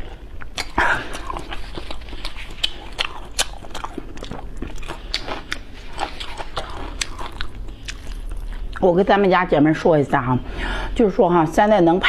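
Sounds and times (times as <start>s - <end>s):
person chewing: 0.0s - 9.0s.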